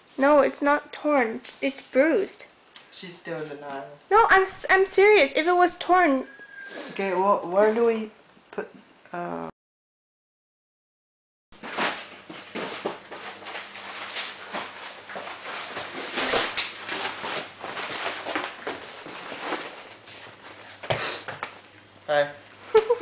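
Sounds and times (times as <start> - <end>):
cardboard rustling and knocking: 11.6 - 21.0.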